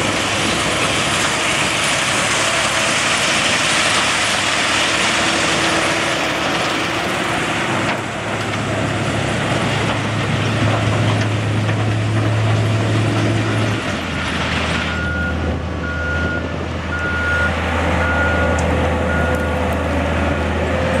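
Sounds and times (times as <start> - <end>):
engine hum: 0.0 - 21.0
reversing alarm beeping: 14.9 - 19.6.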